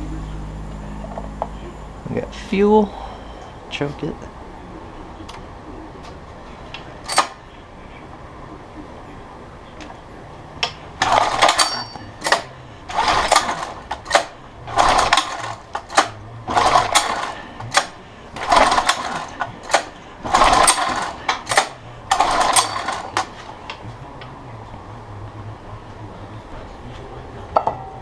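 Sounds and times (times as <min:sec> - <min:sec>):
outboard motor pull-starter whirring: 0:11.0 - 0:23.6.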